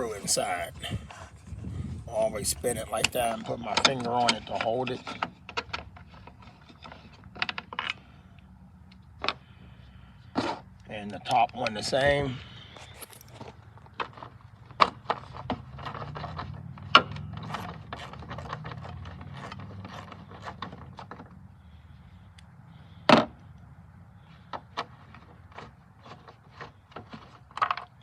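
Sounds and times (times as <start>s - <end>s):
tool clicks and rubbing: 12.8s - 13.5s.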